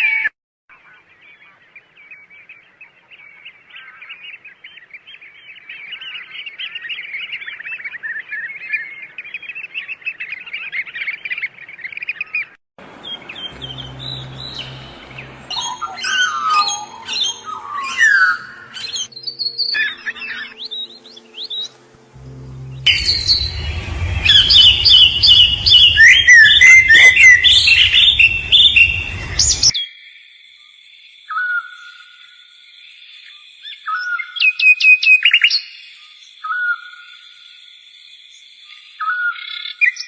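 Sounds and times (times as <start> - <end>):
small birds chirping: 0.7 - 21.8
steady low hum: 12.8 - 15.5, 20.6 - 29.7.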